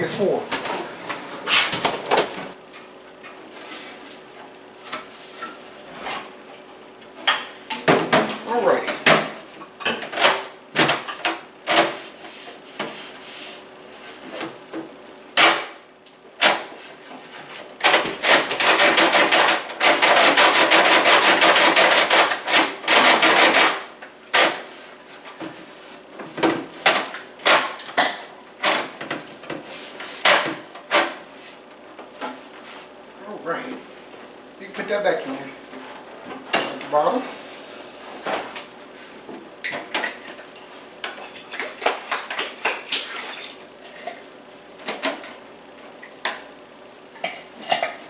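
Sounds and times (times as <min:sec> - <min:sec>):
kitchen items clattering: 0:00.0 - 0:02.7, 0:39.6 - 0:45.4, 0:47.2 - 0:48.0.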